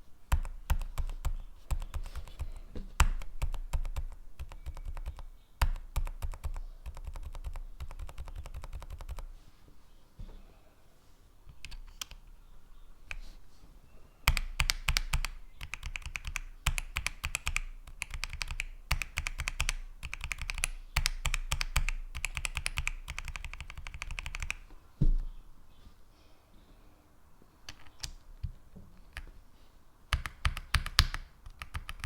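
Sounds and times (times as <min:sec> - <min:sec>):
typing on mechanical keyboard: 0:00.3 - 0:09.3, 0:14.3 - 0:24.6, 0:30.1 - 0:32.0.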